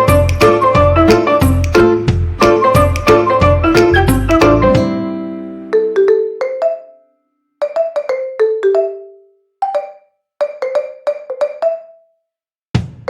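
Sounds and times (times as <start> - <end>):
light melody of struck notes: 0.0 - 5.9.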